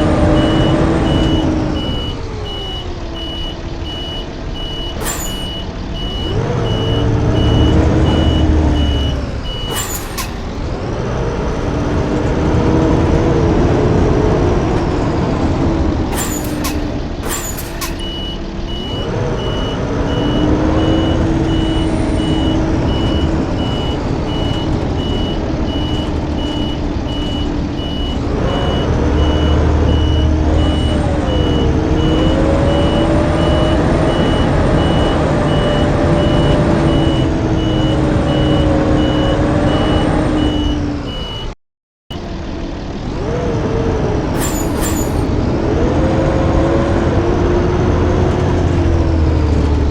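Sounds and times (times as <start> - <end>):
bus engine accelerating: 0.0 - 49.9
sharp clicks or hisses: 9.1 - 10.6, 44.4 - 45.3.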